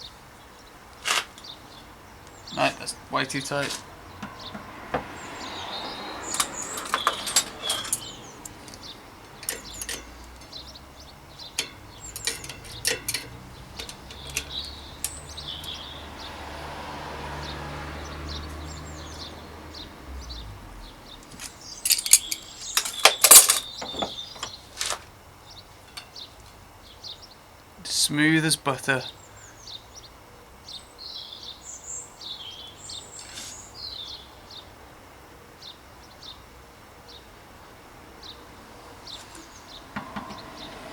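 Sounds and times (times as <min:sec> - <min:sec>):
metal spanners clinking: 0:05.9 - 0:16.0, 0:21.2 - 0:25.1, 0:25.8 - 0:26.2.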